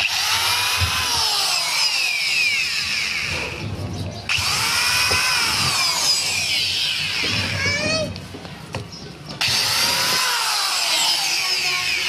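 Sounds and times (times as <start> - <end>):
power tool motor whining: 0.0 - 3.7, 4.3 - 8.2, 9.4 - 12.0.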